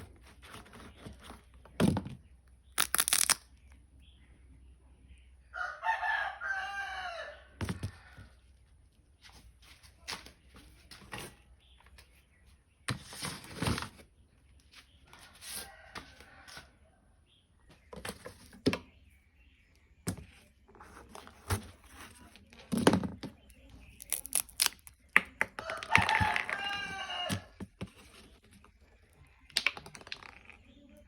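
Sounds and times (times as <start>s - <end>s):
sharp snaps and knocks: 2.8s - 3.4s.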